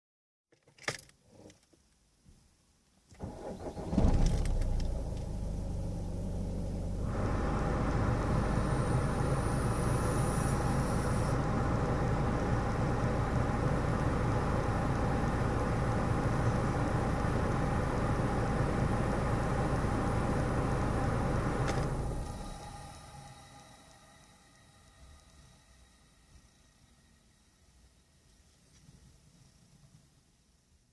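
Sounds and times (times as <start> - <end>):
low hum: 3.8 - 28.6
air conditioning whooshing: 4.4 - 14.6.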